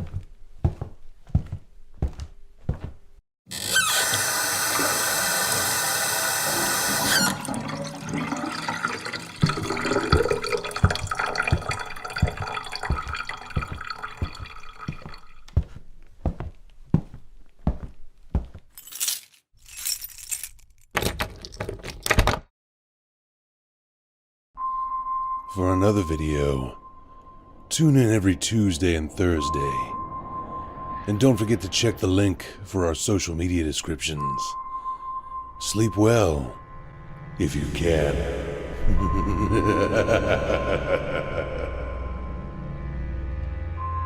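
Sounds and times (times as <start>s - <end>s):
running water rushing: 4.4s - 15.4s
water splashing: 6.5s - 15.5s.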